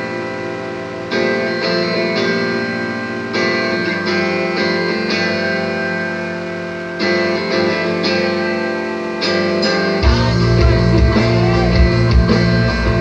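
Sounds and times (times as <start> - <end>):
guitar playing alone: 0.0 - 13.0
heavy full band playing: 9.3 - 13.0.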